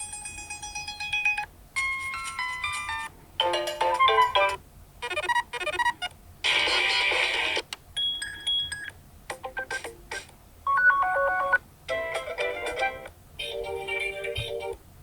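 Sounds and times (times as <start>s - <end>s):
short electronic ringtone melodies: 0.0s - 6.0s, 10.7s - 11.6s.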